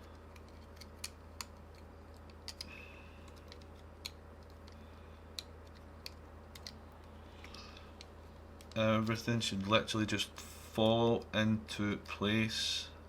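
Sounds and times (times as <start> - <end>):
plastic parts clicking together: 0.0 - 8.8
steady low hum: 0.0 - 13.0.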